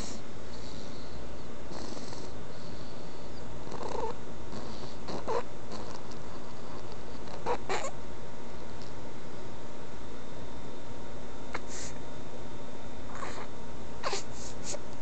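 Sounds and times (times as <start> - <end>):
harsh rasping breathing: 0.0 - 7.9
steady low hum: 0.0 - 15.0.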